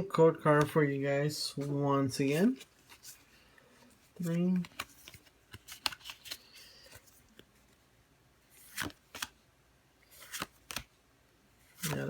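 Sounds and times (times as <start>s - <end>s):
trading cards rustling and clicking: 0.4s - 7.8s, 8.5s - 9.4s, 10.1s - 11.0s, 11.6s - 12.0s.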